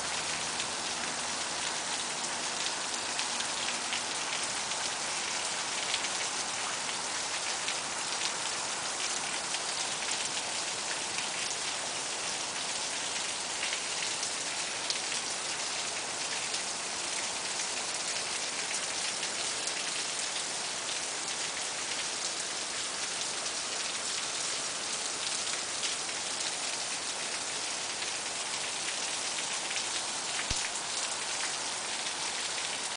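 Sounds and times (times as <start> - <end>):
steady rain falling: 0.0 - 32.9.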